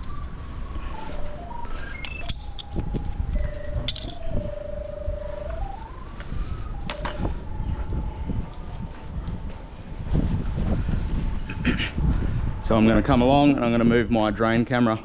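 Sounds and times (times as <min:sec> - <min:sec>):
pipe locator tone: 0:00.0 - 0:08.9
low wind rumble: 0:00.0 - 0:15.0
handling clicks: 0:02.0 - 0:04.2.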